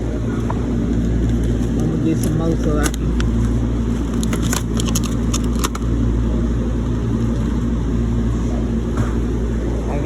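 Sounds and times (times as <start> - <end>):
steady low hum: 0.0 - 10.0
food packaging crinkling: 1.0 - 5.8.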